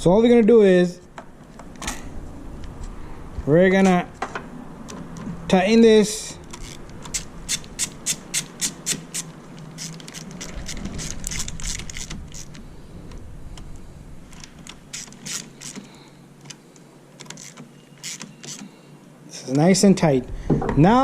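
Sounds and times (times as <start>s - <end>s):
ratchet wrench clicking: 6.5s - 12.6s, 14.9s - 15.9s
tool scraping: 6.5s - 13.2s, 14.3s - 16.1s.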